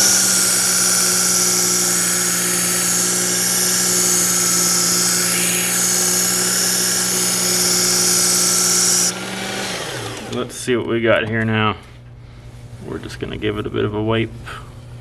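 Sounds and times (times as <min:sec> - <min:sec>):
sharpener motor humming: 0:00.0 - 0:10.5.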